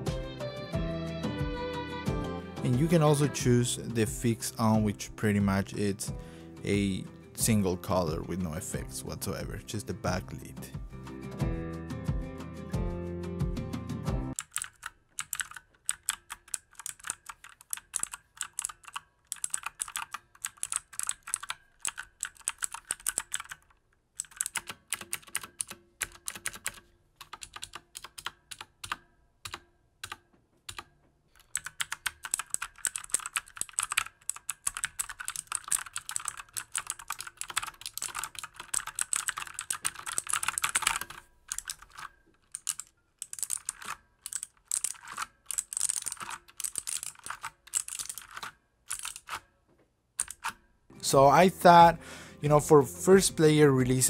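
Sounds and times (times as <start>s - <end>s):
mechanical keyboard key clicks: 14.4s - 30.8s, 31.4s - 49.4s, 50.2s - 50.6s.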